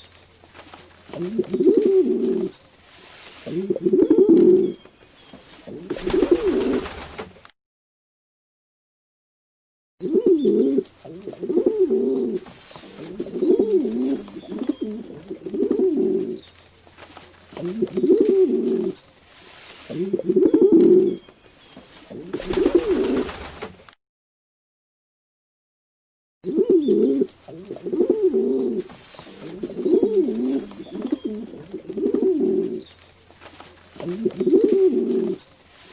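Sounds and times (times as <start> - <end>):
pigeons cooing: 1.1 - 2.6, 3.4 - 7.1, 10.0 - 16.5, 17.5 - 21.3, 22.1 - 23.6, 26.4 - 32.9, 33.9 - 35.9.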